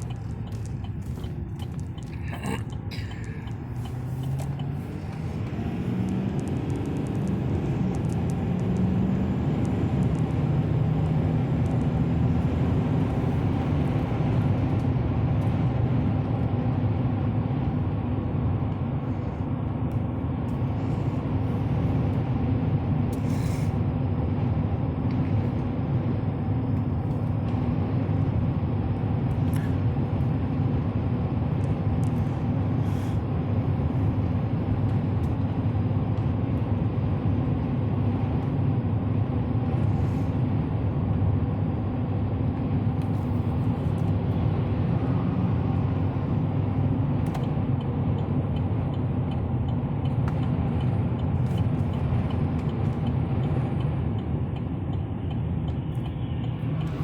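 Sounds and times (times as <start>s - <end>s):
road noise: 0.0s - 57.0s
truck engine: 0.0s - 57.0s.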